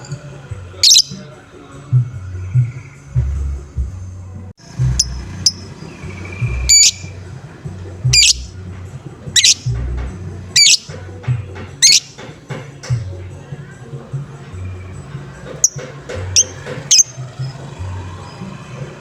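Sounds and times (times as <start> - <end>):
background music with low beat: 0.0 - 19.0
bird chirps: 0.8 - 1.4, 4.6 - 13.0, 14.6 - 18.7
lovebird calling: 0.8 - 1.4, 4.6 - 13.2, 14.5 - 18.6.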